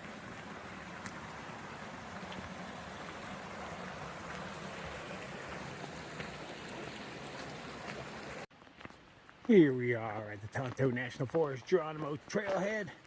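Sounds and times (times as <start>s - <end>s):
creek water rushing: 0.0s - 8.5s.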